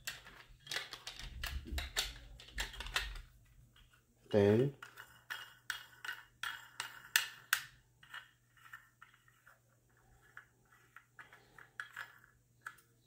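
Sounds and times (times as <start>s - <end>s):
light ticks and scraping: 4.8s - 13.0s.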